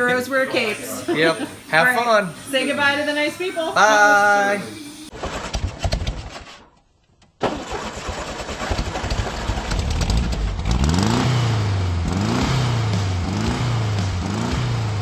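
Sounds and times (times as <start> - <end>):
car engine revving: 7.7 - 15.0.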